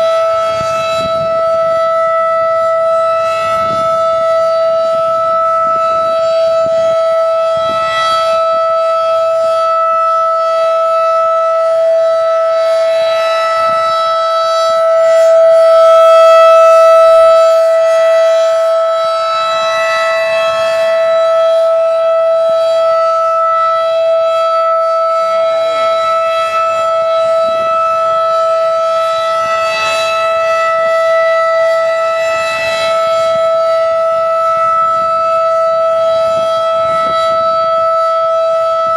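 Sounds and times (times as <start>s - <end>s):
outdoor warning siren steady tone: 0.0s - 38.9s.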